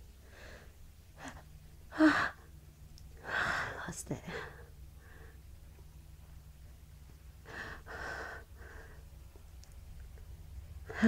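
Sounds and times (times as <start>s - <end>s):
woman breathing and sniffing: 7.3s - 9.2s.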